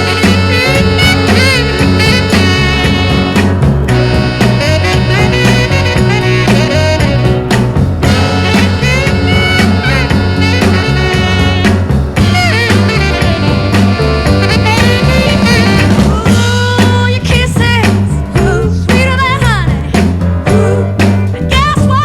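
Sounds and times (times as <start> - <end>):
saxophone: 0.0 - 16.9
brass: 0.0 - 17.1
bass line: 0.0 - 22.0
drums: 0.0 - 22.0
rhythm and blues record playing: 0.0 - 22.0.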